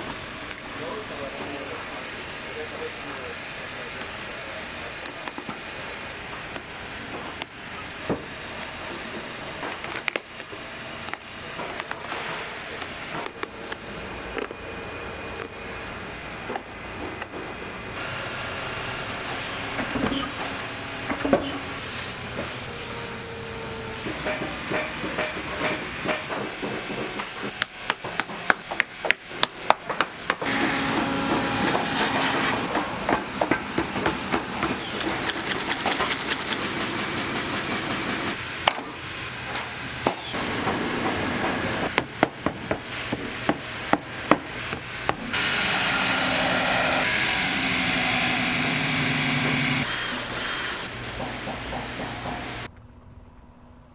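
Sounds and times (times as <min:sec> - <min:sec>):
hammer knocks and taps: 0:41.9 - 0:45.2.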